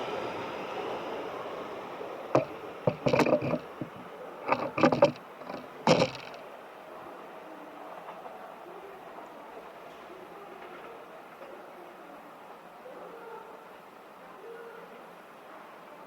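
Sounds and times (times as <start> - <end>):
train rumbling: 0.0 - 11.6
short clanks and knocks: 2.3 - 6.4.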